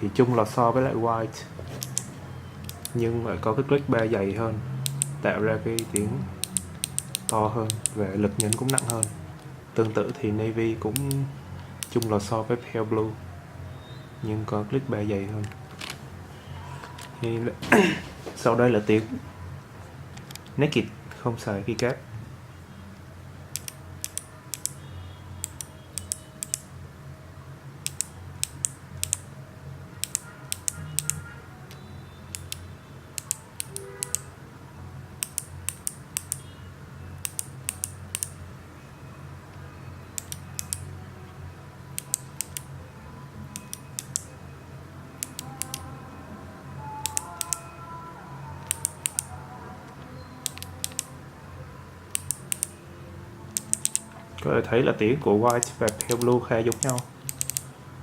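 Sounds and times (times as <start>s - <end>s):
clicky keyboard switches pressed: 5.8s - 9.2s, 37.2s - 38.3s, 47.0s - 47.6s, 48.6s - 49.3s, 50.4s - 51.1s, 52.1s - 52.7s, 53.5s - 54.1s, 55.5s - 57.7s.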